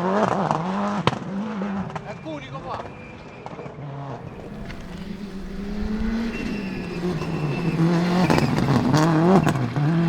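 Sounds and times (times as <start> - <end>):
rally car engine revving: 0.0 - 2.0, 3.9 - 10.0
exhaust pops: 4.2 - 10.0.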